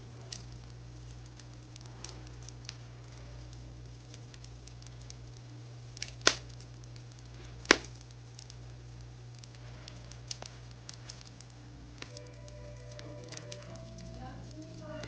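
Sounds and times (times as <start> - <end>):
wood fire crackling: 0.0 - 15.0
loud sharp pops: 6.0 - 6.6, 7.4 - 8.0.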